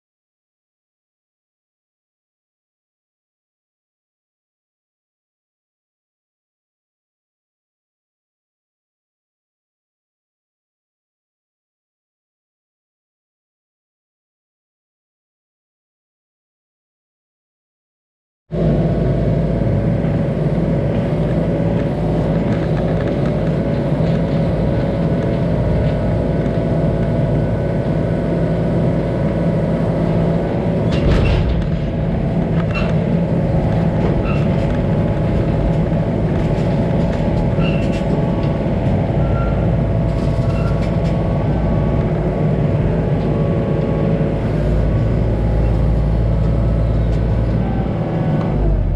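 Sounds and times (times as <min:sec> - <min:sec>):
engine running steadily: 0:18.5 - 0:48.9.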